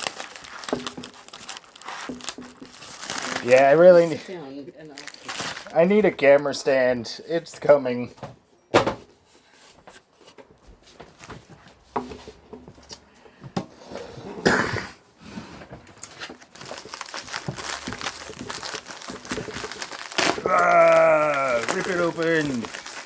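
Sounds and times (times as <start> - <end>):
package wrapping crinkling: 0.0 - 4.2, 4.8 - 6.0, 16.0 - 23.0.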